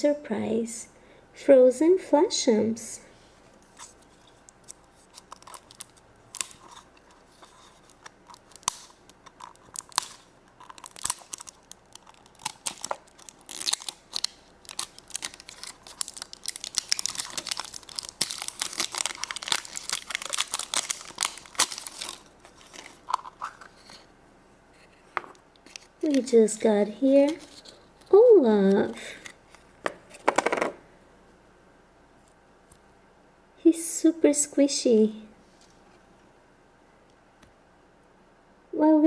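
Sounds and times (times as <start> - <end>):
wrapper tearing and crinkling: 3.8 - 24.1.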